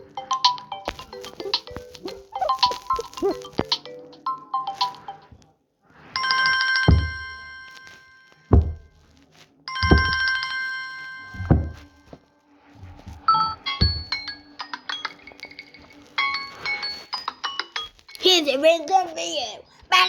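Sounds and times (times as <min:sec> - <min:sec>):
bright chiming ringtone chord: 0:00.0 - 0:05.3
quick ringtone melody: 0:00.0 - 0:05.3
deep low thuds: 0:06.9 - 0:07.2, 0:08.5 - 0:09.0, 0:09.8 - 0:10.2, 0:11.4 - 0:11.8.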